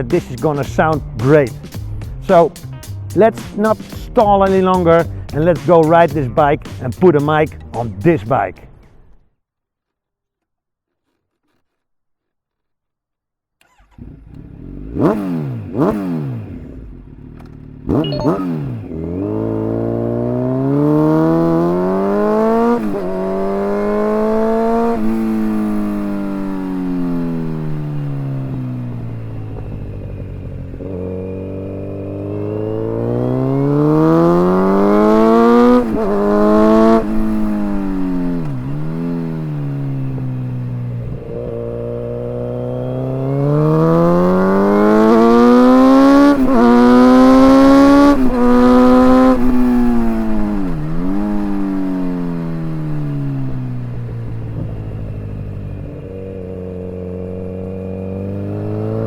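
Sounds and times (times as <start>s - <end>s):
motorcycle engine revving: 13.6s - 59.0s.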